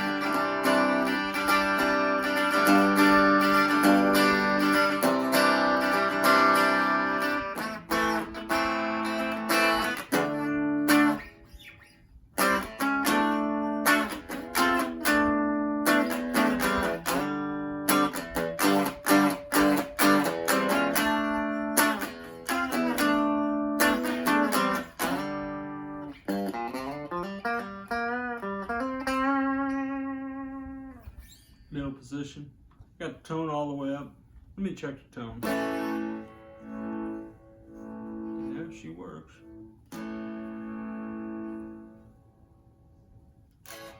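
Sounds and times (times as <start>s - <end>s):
electric guitar playing: 0.0s - 31.5s, 35.4s - 43.9s.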